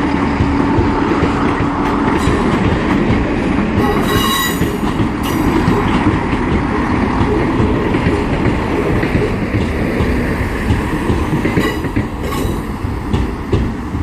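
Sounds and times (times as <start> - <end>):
train engines and wheels rumbling: 0.0 - 14.0
wheel flanges squealing: 3.8 - 6.0.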